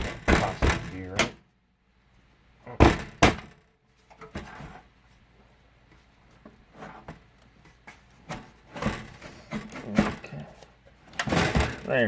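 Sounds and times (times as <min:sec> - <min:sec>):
knocks and scrapes: 0:04.0 - 0:05.2, 0:05.9 - 0:12.0.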